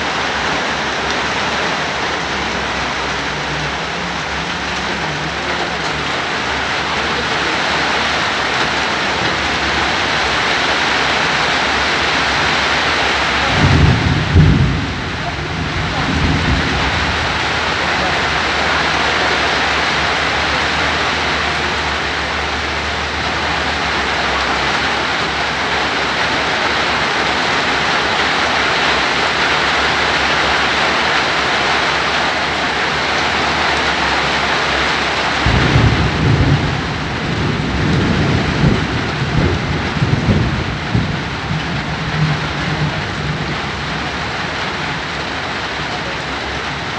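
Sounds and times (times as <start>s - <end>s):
heavy rain: 0.0s - 46.9s
low rumbling: 0.0s - 46.9s.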